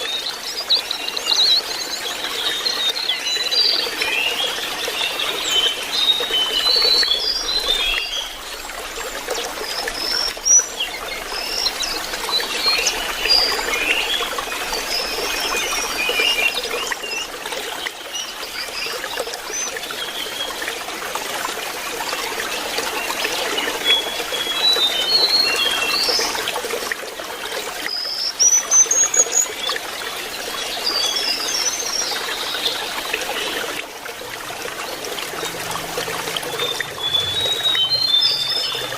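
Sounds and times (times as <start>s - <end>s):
trickle of running water: 0.0s - 38.9s
bird warbling and twittering: 35.3s - 38.9s.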